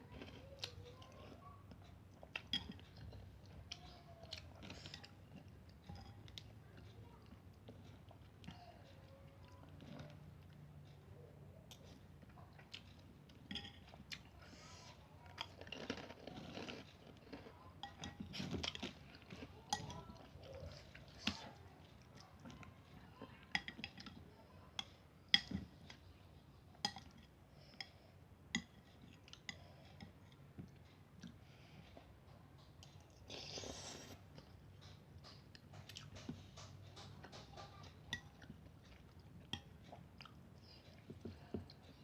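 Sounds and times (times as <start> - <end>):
person chewing: 11.7 - 23.0, 28.5 - 42.0
cutlery clinking against bowl: 13.5 - 14.0.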